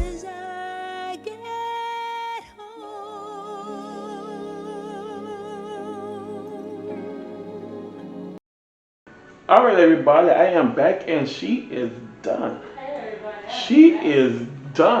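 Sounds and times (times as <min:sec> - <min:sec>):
music with long held notes: 0:00.0 - 0:08.4.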